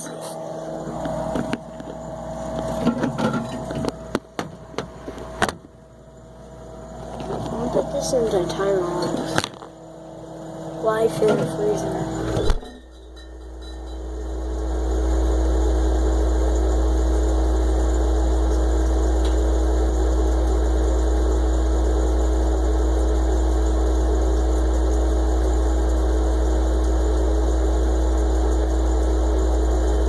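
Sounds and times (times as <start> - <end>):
mini fridge humming: 0.0 - 30.0.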